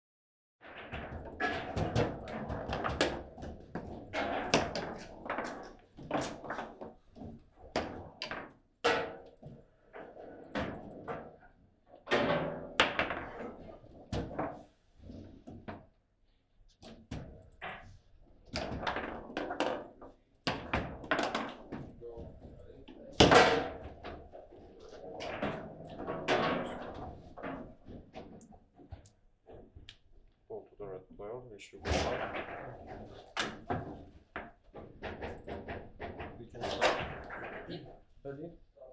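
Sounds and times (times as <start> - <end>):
table football knocks and thuds: 1.0 - 9.6, 12.1 - 14.6, 18.5 - 22.6, 23.2 - 24.4.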